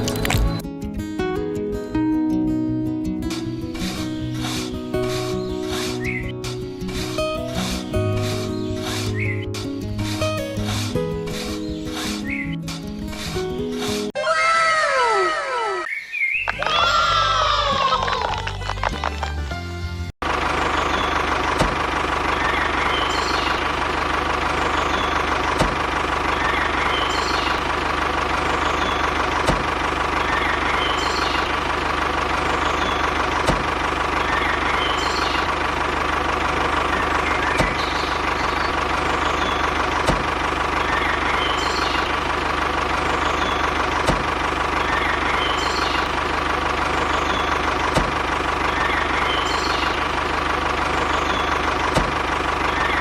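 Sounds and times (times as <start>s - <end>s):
engine idling: 20.2s - 53.0s.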